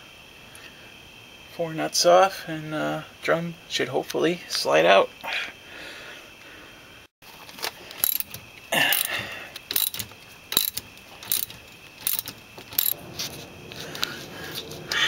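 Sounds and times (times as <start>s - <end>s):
ratchet wrench clicking: 7.9s - 13.0s.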